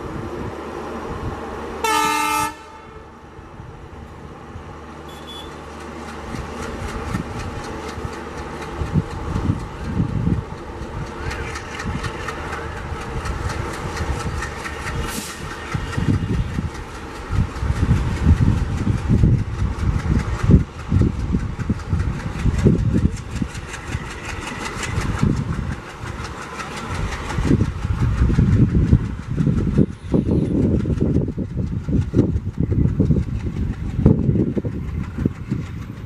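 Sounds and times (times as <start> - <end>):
diesel locomotive engine chugging: 0.0 - 36.0.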